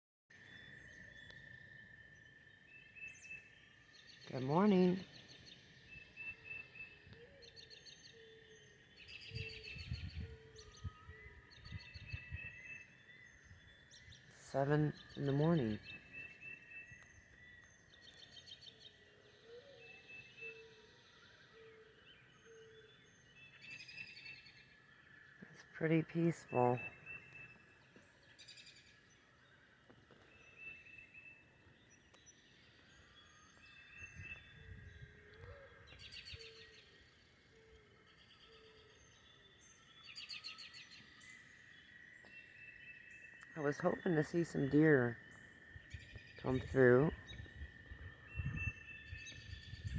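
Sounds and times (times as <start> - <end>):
birds chirping and trilling: 0.3 - 49.9.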